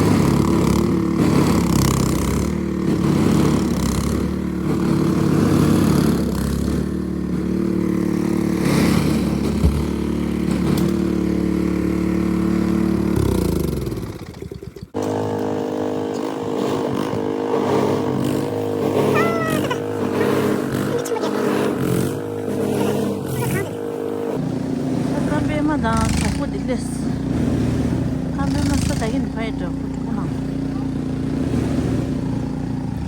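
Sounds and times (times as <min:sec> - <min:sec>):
engine winding down: 0:00.0 - 0:33.0
steady engine running: 0:00.0 - 0:33.0.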